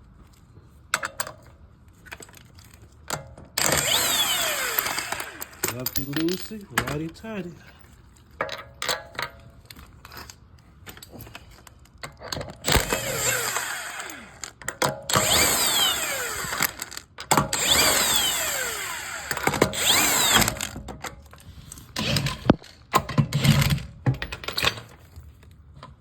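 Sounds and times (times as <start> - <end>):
power tool spinning bolts out: 3.6 - 7.2, 12.6 - 20.9.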